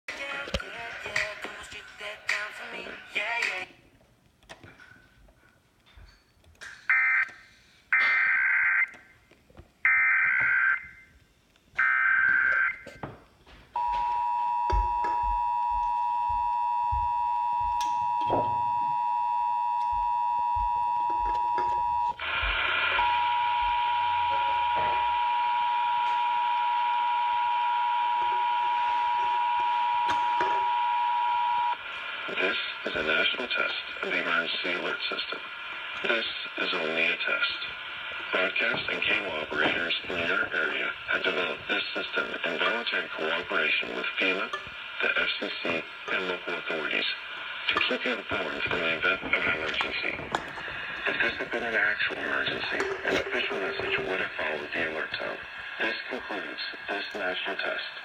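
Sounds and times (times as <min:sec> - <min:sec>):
two-tone attention signal: 0:13.8 - 0:31.8.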